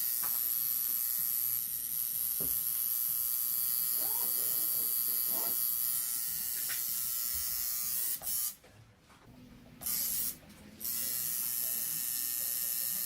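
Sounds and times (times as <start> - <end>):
tattoo machine buzzing: 0.0 - 8.6, 9.8 - 13.0.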